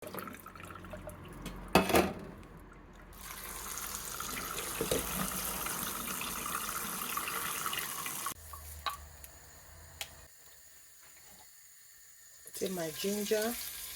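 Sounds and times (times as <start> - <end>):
tap water running into sink: 3.2 - 9.0.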